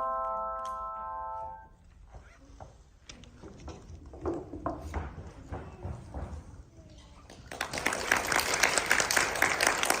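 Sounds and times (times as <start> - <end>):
audience applause: 7.5 - 10.0.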